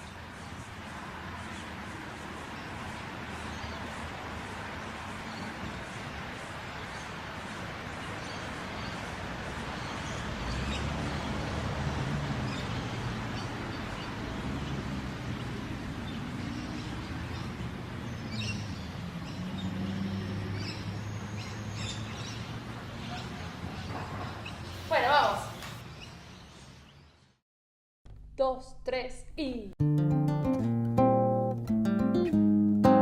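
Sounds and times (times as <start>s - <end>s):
street background noise: 0.0s - 27.3s.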